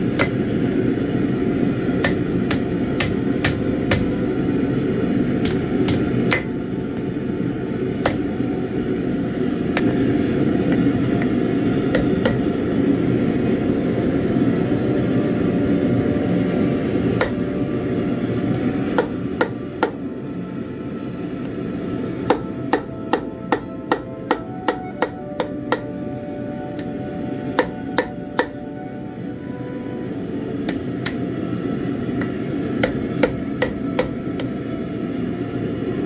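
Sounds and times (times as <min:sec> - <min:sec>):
hammer striking metal: 0:00.0 - 0:00.8, 0:02.0 - 0:04.3, 0:05.4 - 0:07.2, 0:08.0 - 0:08.4, 0:11.9 - 0:12.6, 0:17.2 - 0:17.6, 0:18.8 - 0:20.1, 0:22.2 - 0:25.9, 0:27.5 - 0:28.7, 0:30.6 - 0:31.2, 0:32.2 - 0:34.5.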